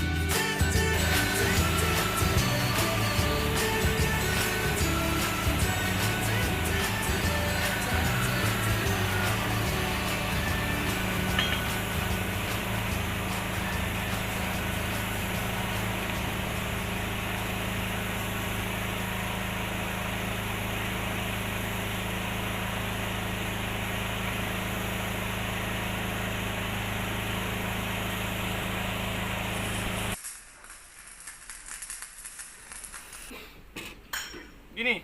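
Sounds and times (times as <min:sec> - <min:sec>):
small engine running: 0:00.0 - 0:33.3
steady hiss: 0:00.4 - 0:20.0, 0:29.5 - 0:33.9.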